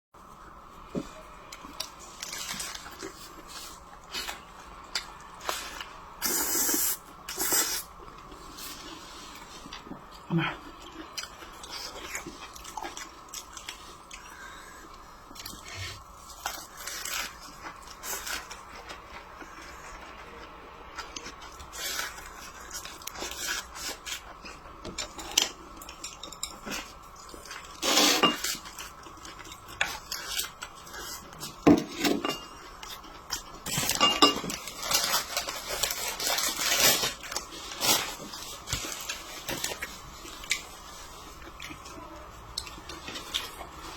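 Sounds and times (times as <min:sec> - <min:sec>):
utensils clinking against plates: 0:27.5 - 0:28.8, 0:31.4 - 0:37.0.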